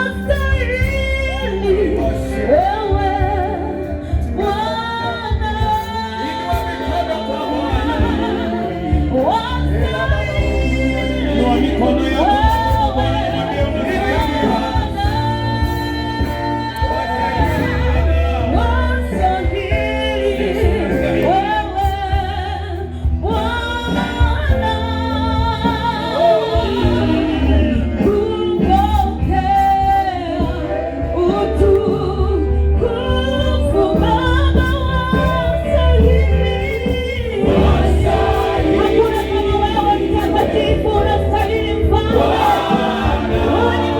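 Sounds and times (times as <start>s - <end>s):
band with strong bass: 0.0s - 43.9s
voices singing gospel music: 0.0s - 43.9s.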